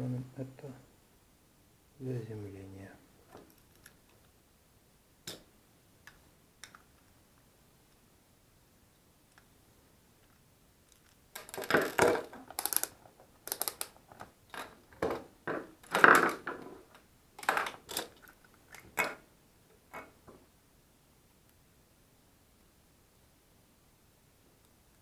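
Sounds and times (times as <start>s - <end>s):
hands handling plug and cable: 10.9s - 16.4s.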